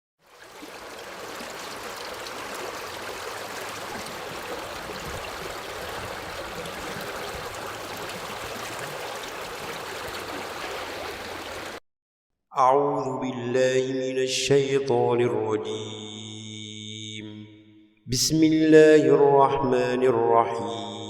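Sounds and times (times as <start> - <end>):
stream water flowing: 0.2 - 11.8.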